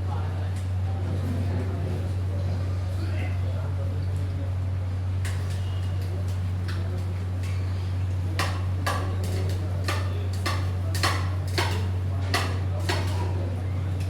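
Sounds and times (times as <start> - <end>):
steady low hum: 1.7 - 14.0
utensils clinking: 5.2 - 14.0.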